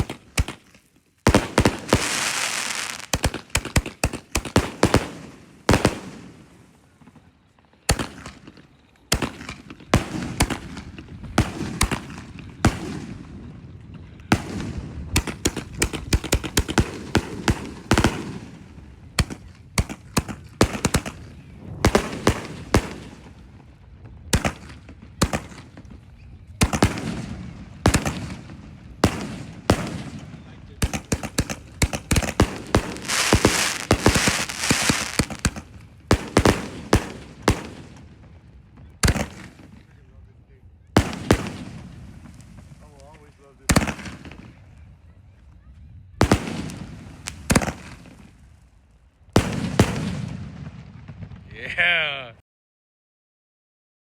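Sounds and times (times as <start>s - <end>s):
firework bangs: 0.0s - 40.2s, 40.8s - 44.8s, 46.2s - 48.5s, 49.3s - 52.0s
firework hiss: 1.3s - 3.8s, 32.1s - 35.8s.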